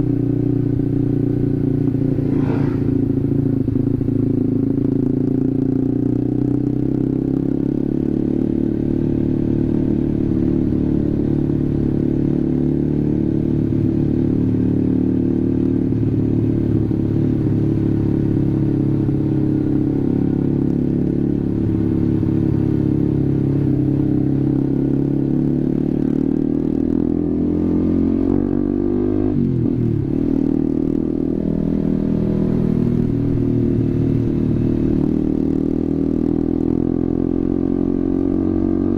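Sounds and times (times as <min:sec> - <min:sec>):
motorcycle engine riding: 0:00.0 - 0:38.9.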